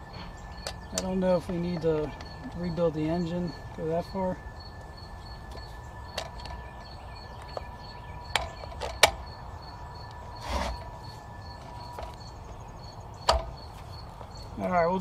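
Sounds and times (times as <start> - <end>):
insects chirping: 0.0 - 15.0
sharp clicks and knocks: 0.6 - 2.7, 5.5 - 9.4, 13.2 - 13.8.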